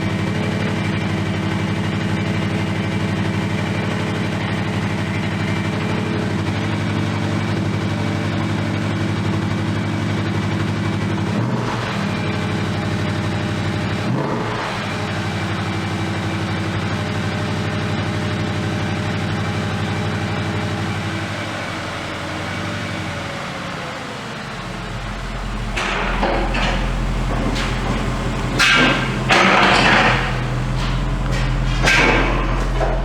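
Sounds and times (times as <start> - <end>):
car engine idling: 15.3 - 33.0.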